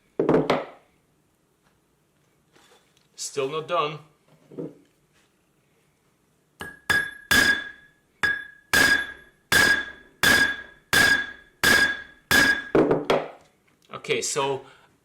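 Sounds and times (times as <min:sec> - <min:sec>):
hammer striking steel nut: 0:06.6 - 0:12.9.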